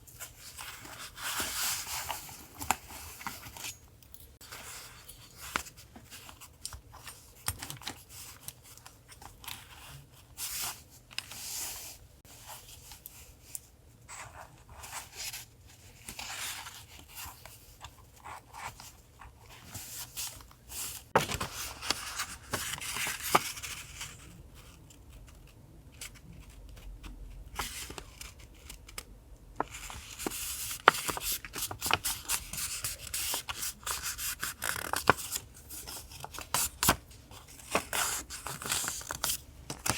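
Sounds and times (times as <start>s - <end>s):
paper rustling and rubbing: 29.6s - 39.9s.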